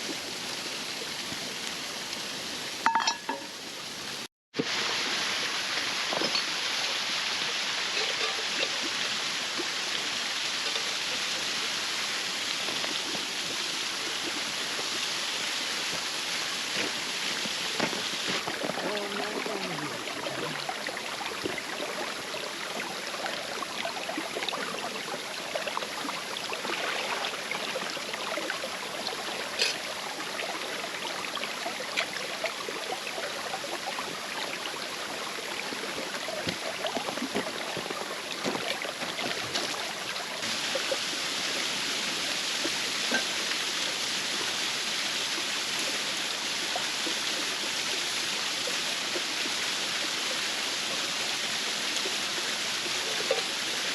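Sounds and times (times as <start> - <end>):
waterfall rushing: 0.0 - 53.9.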